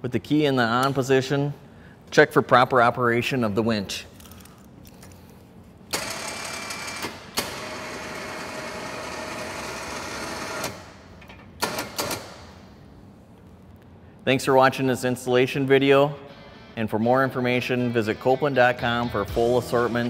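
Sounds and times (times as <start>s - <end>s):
electric winch motor running: 5.9s - 10.9s.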